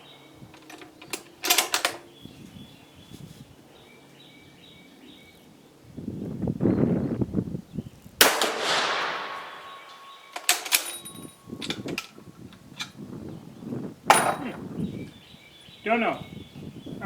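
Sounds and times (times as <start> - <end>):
rifle shot echoing: 8.2 - 10.8.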